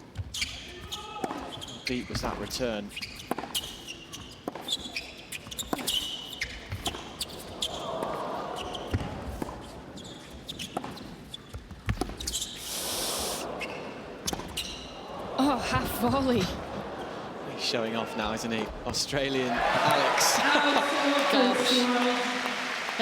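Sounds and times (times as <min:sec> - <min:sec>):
shoe squeaks: 0:00.2 - 0:07.8, 0:09.6 - 0:15.0
crowd noise: 0:07.4 - 0:10.0, 0:12.6 - 0:23.0
tennis ball struck and bouncing: 0:11.8 - 0:12.4.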